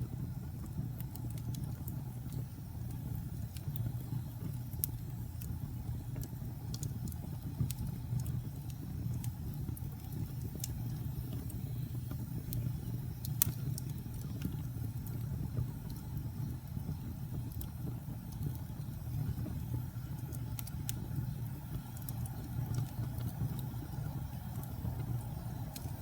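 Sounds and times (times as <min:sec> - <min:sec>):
fire crackles and pops: 0:00.0 - 0:26.0
low rumble of flames: 0:00.0 - 0:26.0.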